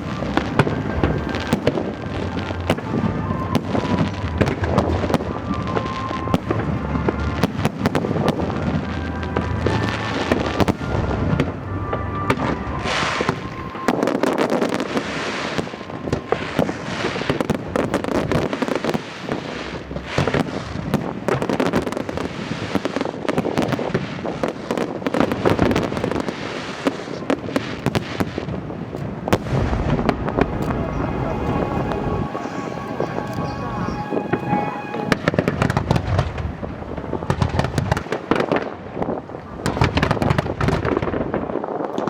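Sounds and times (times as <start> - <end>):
music playing: 0.0 - 17.2, 29.3 - 37.1
fireworks bangs and crackles: 0.0 - 42.0.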